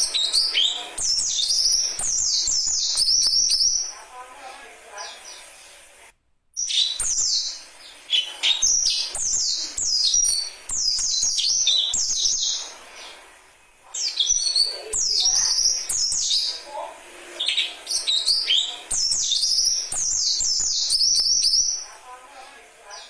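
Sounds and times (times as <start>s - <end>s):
songbird whistled notes: 0.0s - 4.0s, 6.6s - 13.2s, 14.0s - 16.6s, 17.4s - 21.9s.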